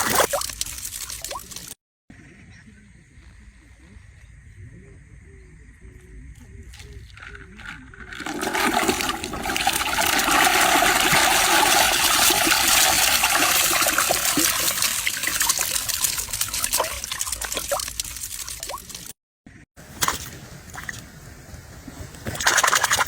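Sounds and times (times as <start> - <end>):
water drips: 8.0 - 19.1
water splashing from thrashing fish: 8.0 - 19.1, 22.3 - 23.0.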